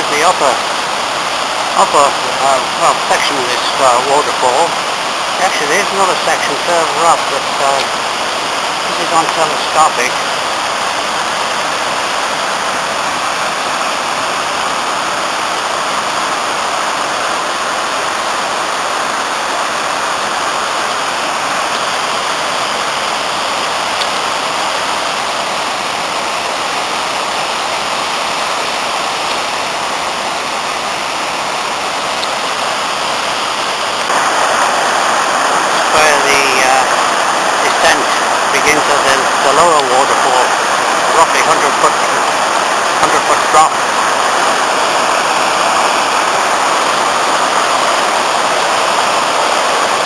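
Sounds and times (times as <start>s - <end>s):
waterfall roaring: 0.0s - 50.0s.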